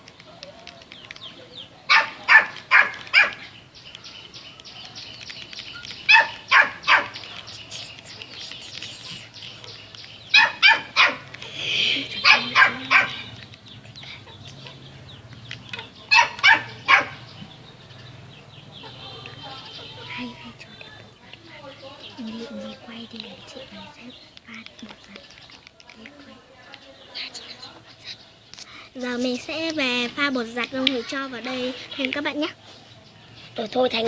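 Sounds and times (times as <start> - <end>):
dog barking: 1.9 - 3.5, 6.1 - 7.4, 9.6 - 11.3, 12.2 - 13.3, 14.6 - 14.9, 15.8 - 17.4.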